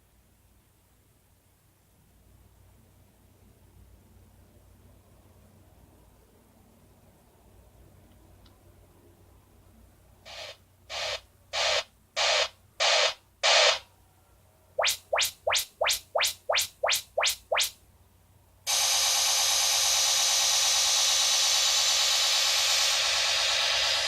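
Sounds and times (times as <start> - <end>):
hiss bursts from speaker: 10.3 - 13.8
steady hiss: 10.3 - 13.8
rising tone sweeps: 14.8 - 17.7.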